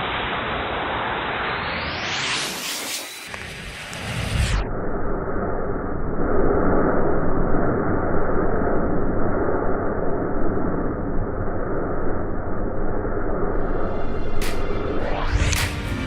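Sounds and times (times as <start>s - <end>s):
burning matches rushing: 2.5s - 4.4s.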